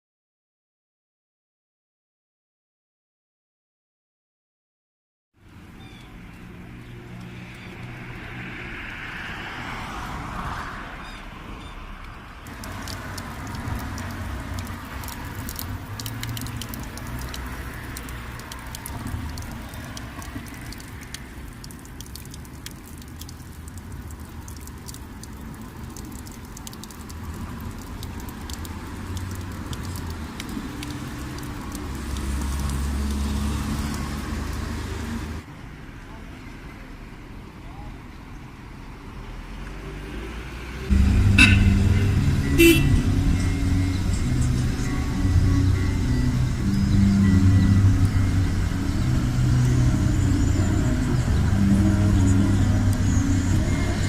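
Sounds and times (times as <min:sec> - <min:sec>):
road noise: 0:05.4 - 0:54.0
vehicle engine rumble: 0:05.4 - 0:54.0.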